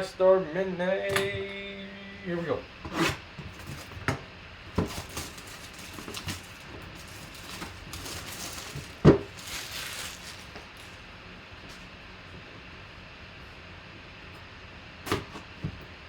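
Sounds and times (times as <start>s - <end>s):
cardboard packaging rustling: 2.9s - 4.1s, 4.7s - 11.9s.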